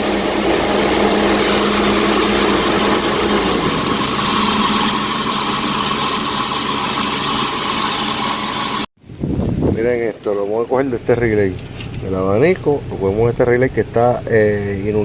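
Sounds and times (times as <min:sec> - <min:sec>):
car engine idling: 0:00.0 - 0:08.9.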